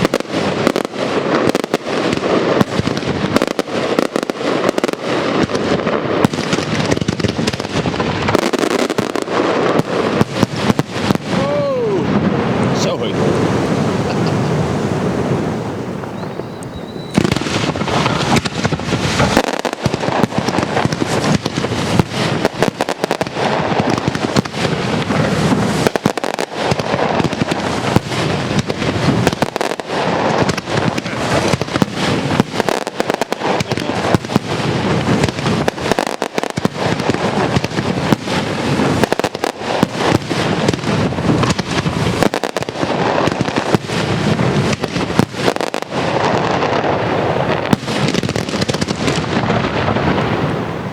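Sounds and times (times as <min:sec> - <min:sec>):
fireworks barrage of rapid bangs: 0:00.0 - 0:50.9.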